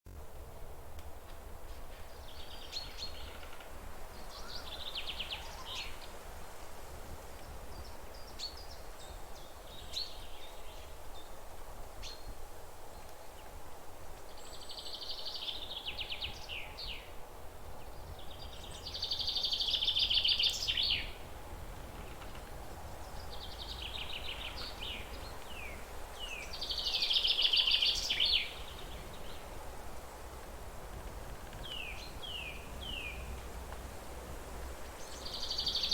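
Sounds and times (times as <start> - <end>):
low background rumble: 15.0 - 35.9.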